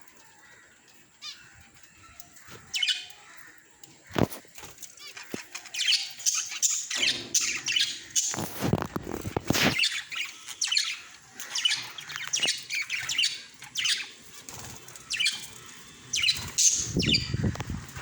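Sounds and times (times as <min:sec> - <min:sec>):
parrots chirping and squawking: 0:00.4 - 0:03.6, 0:04.2 - 0:18.0
low fluttering rustle: 0:08.2 - 0:10.3, 0:11.4 - 0:18.0.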